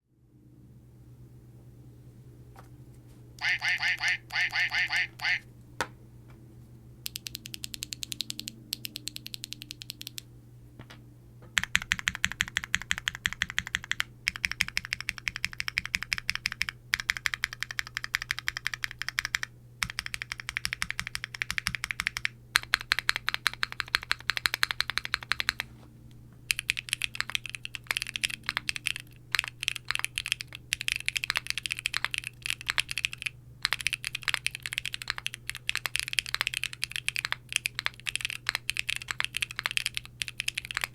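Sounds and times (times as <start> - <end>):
fast typing on keyboard: 7.0 - 10.3, 11.6 - 25.7, 26.5 - 40.9.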